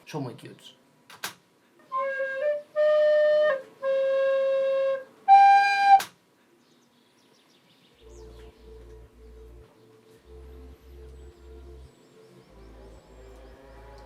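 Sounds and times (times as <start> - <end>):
sharp click: 1.1 - 1.4
flute playing long notes: 1.9 - 6.1
faint soft music with low beat: 6.1 - 14.0.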